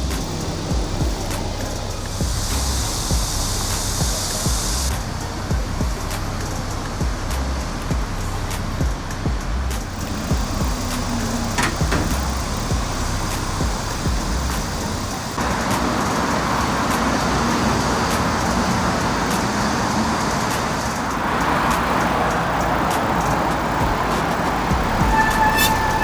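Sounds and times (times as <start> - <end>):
passing cars: 0.0 - 26.0
steady tone: 23.8 - 26.0.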